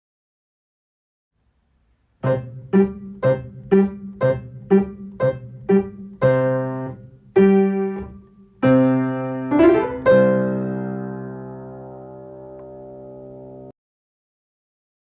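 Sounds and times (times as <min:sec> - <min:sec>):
piano playing chords: 0:02.2 - 0:13.7.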